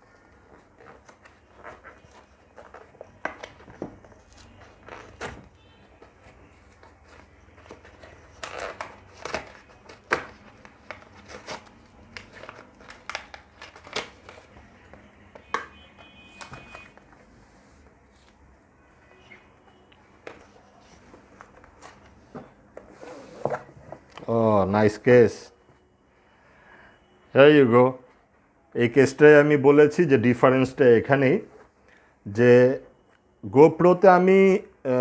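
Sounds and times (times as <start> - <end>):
cardboard and paper rustling: 0.0 - 18.4, 20.0 - 24.5.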